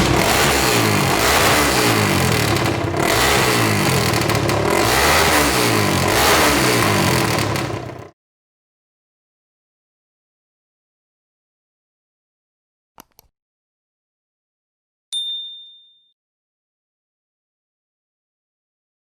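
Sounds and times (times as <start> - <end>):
motorcycle engine revving: 0.0 - 8.1.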